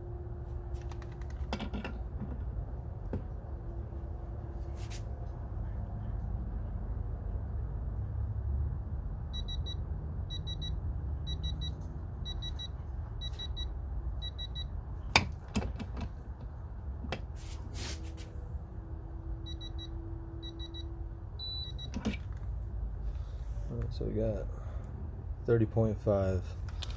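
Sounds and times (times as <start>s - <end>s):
quick double beeps: 9.4s - 14.7s, 19.5s - 21.9s.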